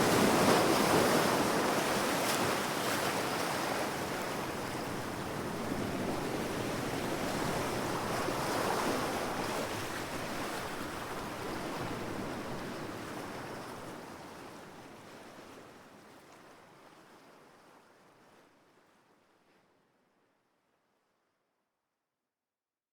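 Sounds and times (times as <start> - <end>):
ocean waves breaking on shore: 0.0 - 14.2.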